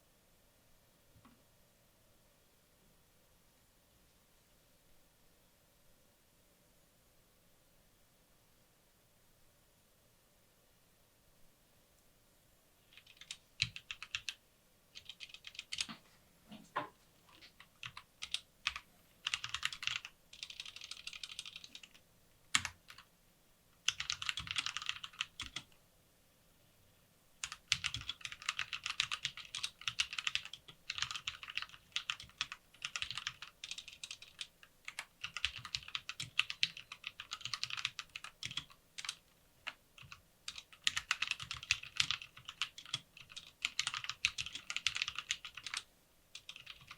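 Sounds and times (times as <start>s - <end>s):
keyboard typing: 12.9s - 16.0s, 17.3s - 23.1s, 23.8s - 25.7s, 27.4s - 46.9s.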